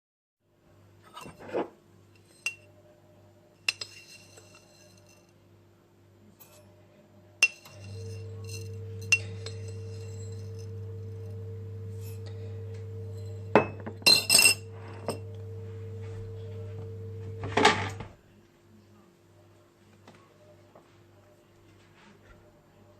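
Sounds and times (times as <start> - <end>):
cup and spoon clinking: 3.7 - 5.2, 7.4 - 17.9
electric appliance humming: 7.7 - 18.2.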